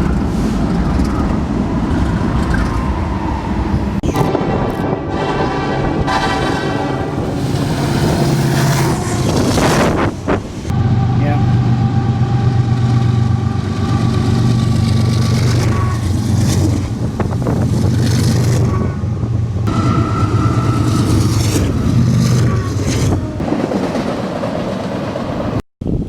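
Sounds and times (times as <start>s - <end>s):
diesel locomotive engine drone: 0.0s - 25.6s
train wheels rolling on rails: 0.0s - 25.6s
high-pitched whines: 5.6s - 16.2s.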